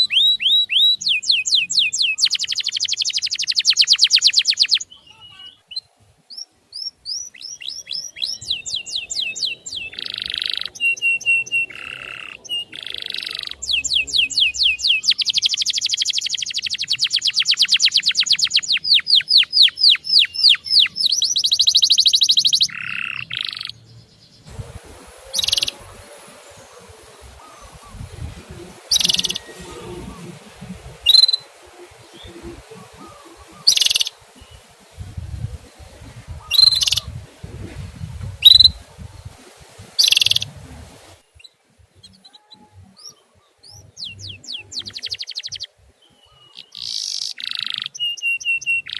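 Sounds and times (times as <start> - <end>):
faint background hiss: 0.0 - 48.9
canary trilling: 7.3 - 23.8, 25.2 - 34.4, 36.4 - 37.2, 40.0 - 40.5.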